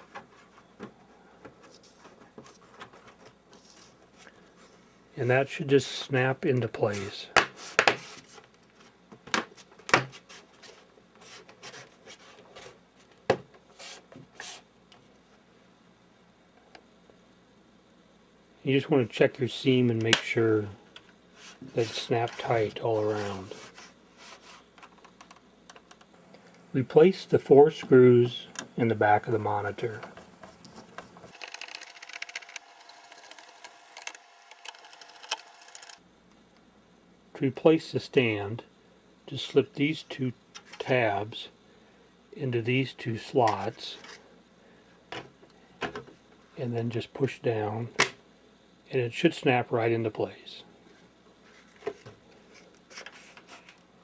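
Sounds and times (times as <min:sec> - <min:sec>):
plastic rubbing and scraping: 0:29.4 - 0:36.0
screwdriver driving screws into plastic: 0:31.3 - 0:36.0.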